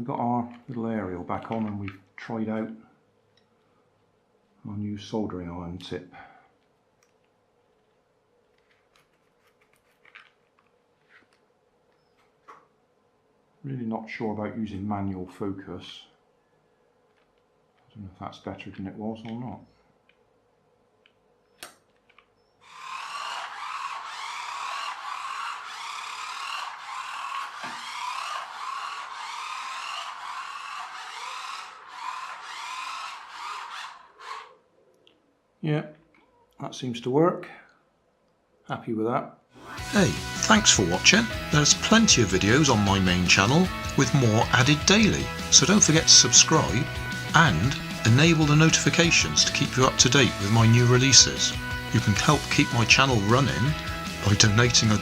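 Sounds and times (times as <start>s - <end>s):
small electric motor whirring: 22.6s - 34.6s, 39.6s - 55.0s.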